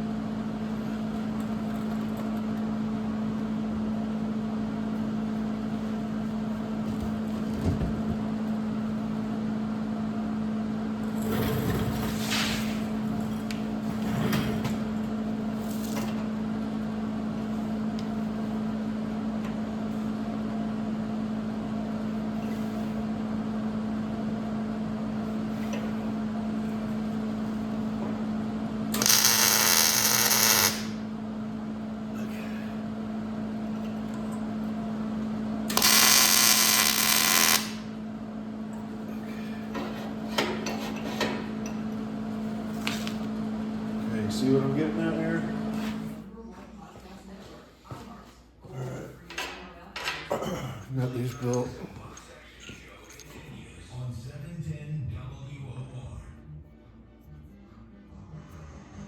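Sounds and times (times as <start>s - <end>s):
harsh bursts of metal cutting: 28.9s - 31.0s, 35.7s - 37.9s
power tool motor hum: 28.9s - 31.0s, 35.7s - 37.9s.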